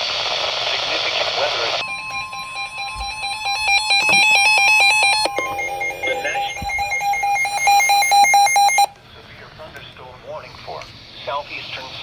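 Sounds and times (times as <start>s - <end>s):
pulsing alarm tone: 1.8s - 8.9s
steady tone: 1.8s - 8.9s
warbling alert beeps: 1.8s - 8.9s.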